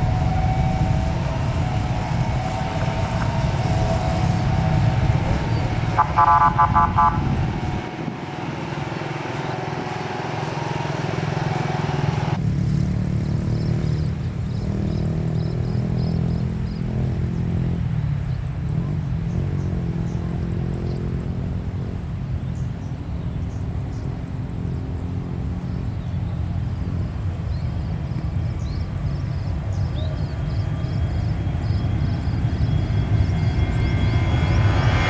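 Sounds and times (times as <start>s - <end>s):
vehicle horn short toots: 0.0s - 12.4s
road traffic: 0.0s - 35.0s.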